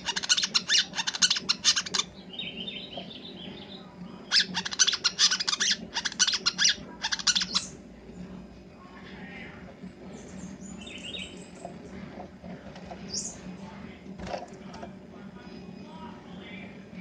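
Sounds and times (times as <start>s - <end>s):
bird singing chattering song: 0.0s - 7.8s, 10.1s - 11.6s.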